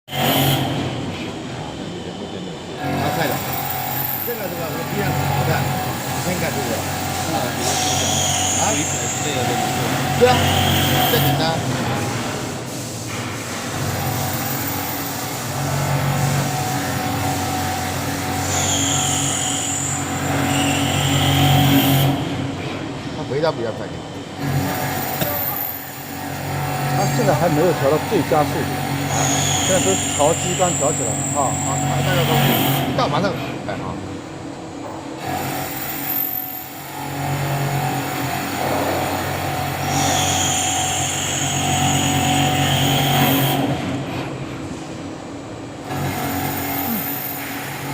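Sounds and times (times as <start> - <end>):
machining noise: 1.6 - 12.1, 13.8 - 22.4, 24.4 - 33.2, 38.4 - 43.9.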